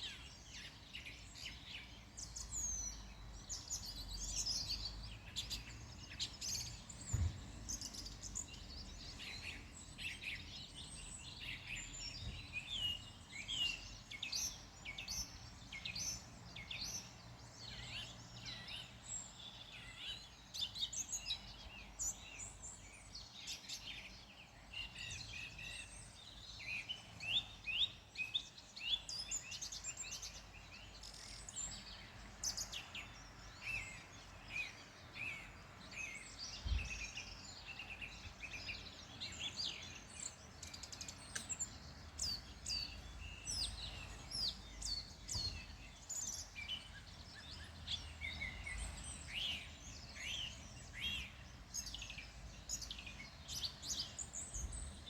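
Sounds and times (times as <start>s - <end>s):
small birds chirping: 0.0s - 55.0s
low thump: 7.1s - 7.6s.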